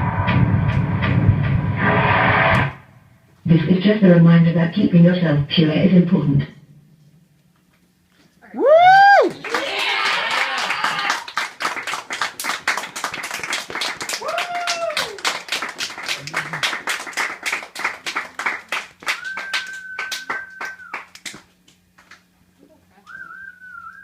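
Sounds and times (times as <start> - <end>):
crowd cheering: 8.6 - 21.2
audience clapping: 9.0 - 22.2
person whistling: 19.1 - 21.1, 23.0 - 24.0.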